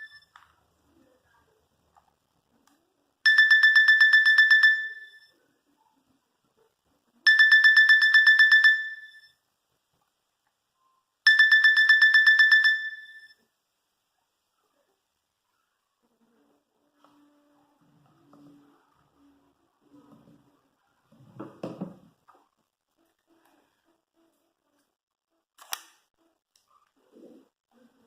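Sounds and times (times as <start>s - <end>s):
phone ringtone trill: 0.0s - 0.2s, 3.3s - 5.3s, 7.3s - 9.3s, 11.3s - 13.4s.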